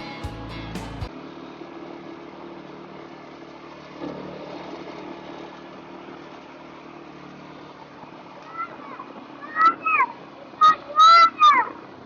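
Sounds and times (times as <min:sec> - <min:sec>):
vehicle engine droning: 0:00.0 - 0:12.0.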